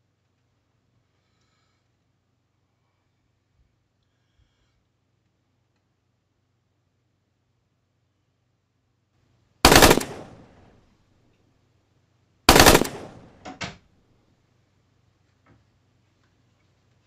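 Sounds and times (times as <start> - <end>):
bursts of rapid banging: 9.7 - 10.5, 12.5 - 13.4.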